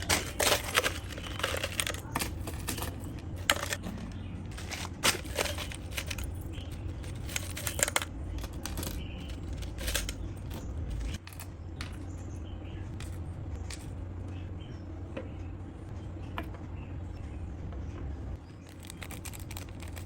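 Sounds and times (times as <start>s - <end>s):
small hard objects clattering: 0.0s - 12.2s, 18.6s - 20.0s.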